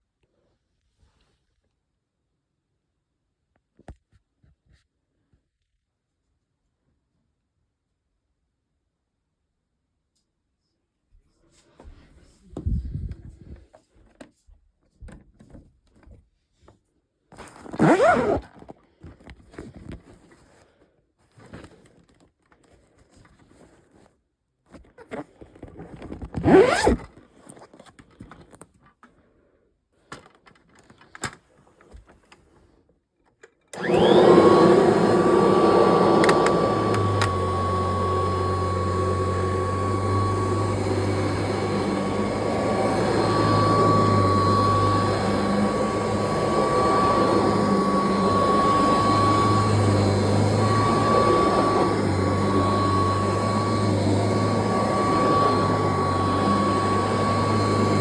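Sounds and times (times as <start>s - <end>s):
vacuum cleaner running: 17.8s - 18.4s, 26.5s - 27.0s, 33.7s - 58.0s.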